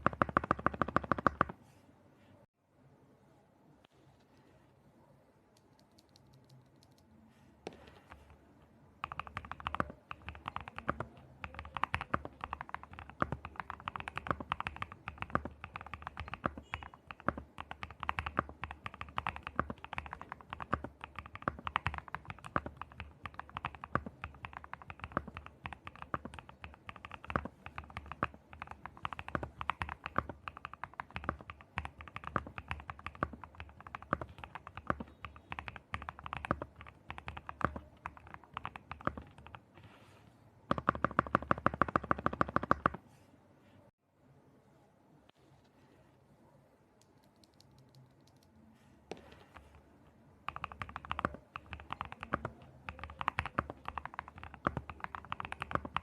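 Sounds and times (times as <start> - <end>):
typing on mechanical keyboard: 0.0 - 1.6, 9.0 - 39.6, 40.7 - 43.0, 50.5 - 56.0.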